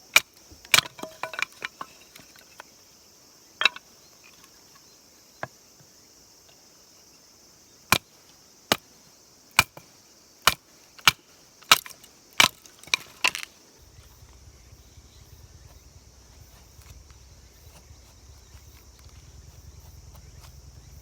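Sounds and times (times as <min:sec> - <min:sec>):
insect chirring: 0:00.0 - 0:21.0
low rumble: 0:13.8 - 0:21.0.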